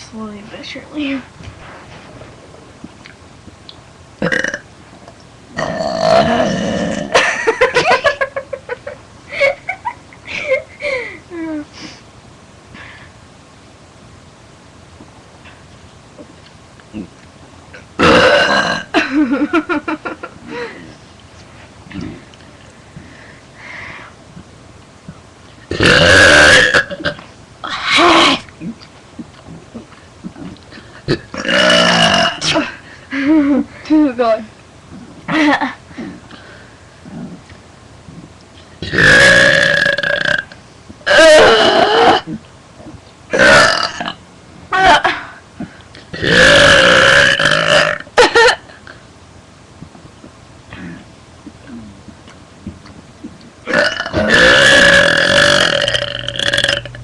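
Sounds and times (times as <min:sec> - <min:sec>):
girl belching loudly: 0:04.2 - 0:04.7, 0:05.6 - 0:07.2, 0:18.0 - 0:19.0, 0:25.7 - 0:27.2, 0:31.1 - 0:32.7, 0:38.8 - 0:42.4, 0:43.3 - 0:44.2, 0:46.1 - 0:48.1, 0:53.7 - 0:57.0
girls burping: 0:53.7 - 0:57.0.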